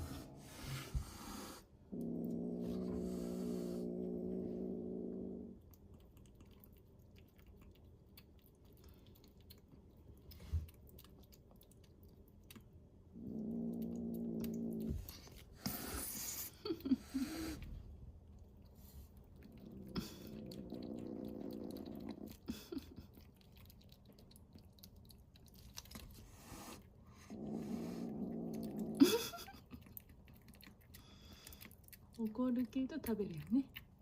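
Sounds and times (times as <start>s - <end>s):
kitten growling: 0.0s - 7.8s, 13.1s - 17.9s, 18.9s - 31.8s.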